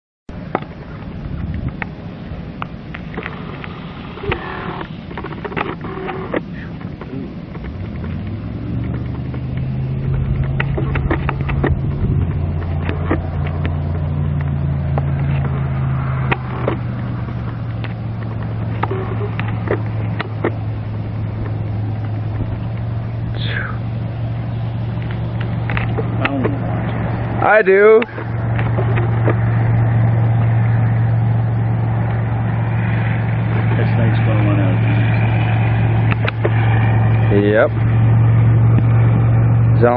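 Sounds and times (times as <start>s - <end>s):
engine idling: 0.3s - 39.9s
sharp clicks: 36.0s - 36.9s.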